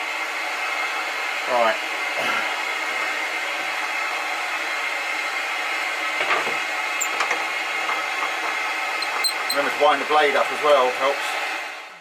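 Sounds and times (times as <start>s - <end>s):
dust extractor rushing: 0.0s - 11.9s.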